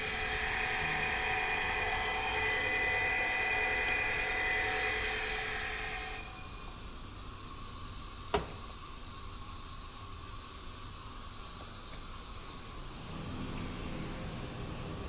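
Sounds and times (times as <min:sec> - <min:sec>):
background hiss: 0:03.5 - 0:15.0.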